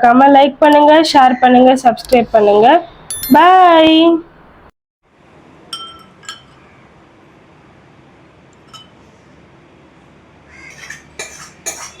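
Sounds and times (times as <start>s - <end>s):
spoon clinking against bowl: 5.7s - 6.6s
spoon and dishes clattering: 5.8s - 6.6s, 8.7s - 9.0s.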